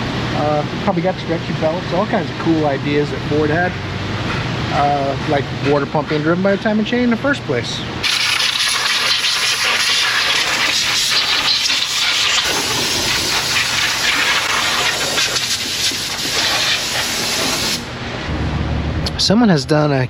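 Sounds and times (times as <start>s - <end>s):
loud hiss of rushing air: 8.0s - 18.0s.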